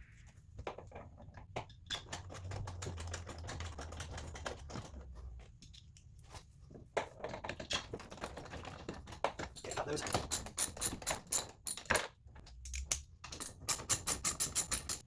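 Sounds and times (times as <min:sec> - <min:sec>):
small metal bolts clicking: 0:07.5 - 0:15.0.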